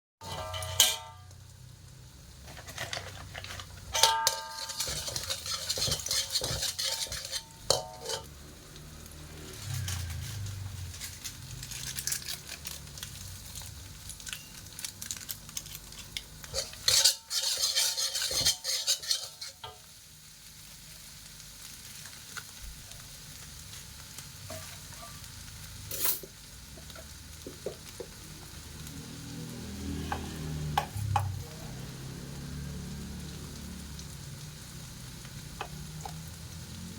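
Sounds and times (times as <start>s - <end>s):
metal spatula scraping a pan: 0.2s - 1.4s, 2.4s - 14.6s, 16.0s - 20.0s, 24.4s - 27.2s, 29.7s - 32.1s
oil sizzling: 0.2s - 36.9s.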